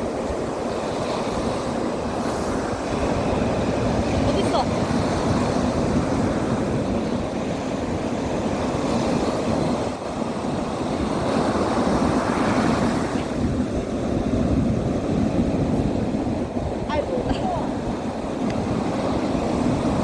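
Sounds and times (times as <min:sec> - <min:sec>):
sea surf: 0:00.0 - 0:20.0
wind on microphone: 0:00.0 - 0:20.0.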